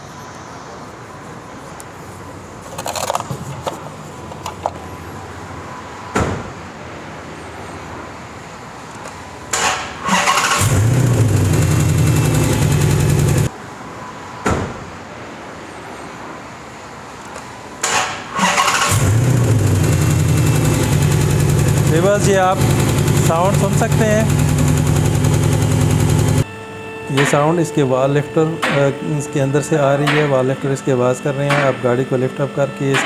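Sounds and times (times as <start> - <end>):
engine cranking and starting: 9.0 - 13.5, 17.8 - 26.4
engine fast ticking knock: 9.5 - 13.5, 17.8 - 26.4
clicks: 30.0 - 30.5, 31.5 - 31.9.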